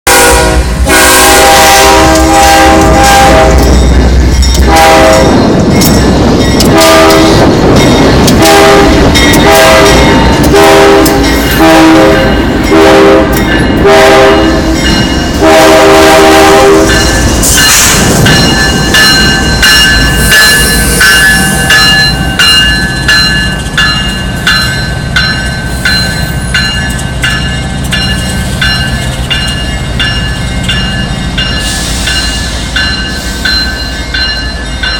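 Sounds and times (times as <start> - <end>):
locomotive air horn: 0.0 - 3.8, 4.6 - 5.4, 6.7 - 7.6, 8.3 - 17.0.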